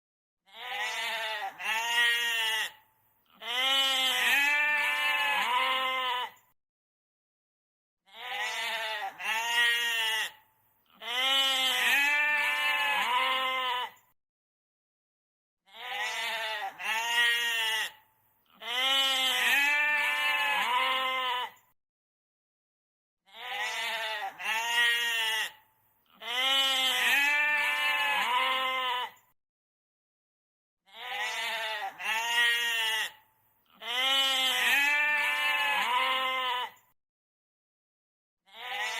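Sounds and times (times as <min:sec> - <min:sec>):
goat bleating: 0:00.5 - 0:06.4, 0:08.1 - 0:14.0, 0:15.7 - 0:21.6, 0:23.3 - 0:29.2, 0:30.9 - 0:36.8, 0:38.5 - 0:38.9.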